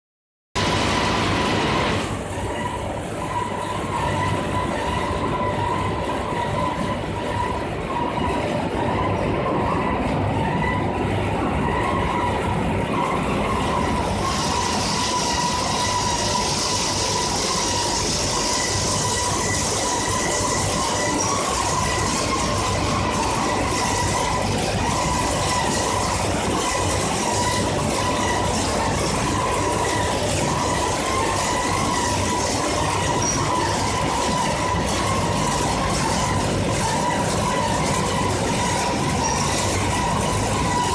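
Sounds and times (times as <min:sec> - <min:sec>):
dryer mechanical rumble: 0:00.6 - 0:40.9
wavering whine: 0:00.6 - 0:40.9.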